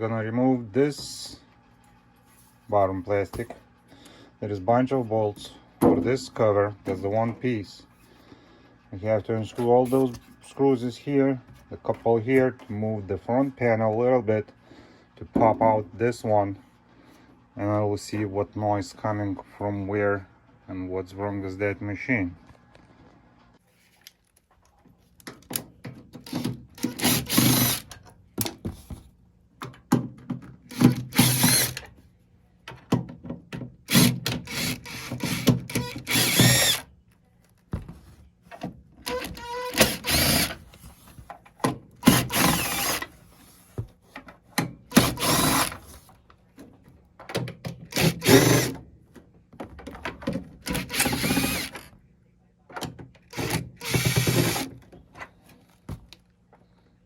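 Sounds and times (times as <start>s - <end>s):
cordless drill spinning out screws: 26.3s - 28.0s, 30.7s - 31.9s, 33.9s - 36.8s, 39.1s - 40.6s, 42.0s - 43.1s, 44.9s - 45.8s, 47.9s - 48.8s, 50.7s - 51.9s, 53.3s - 54.7s.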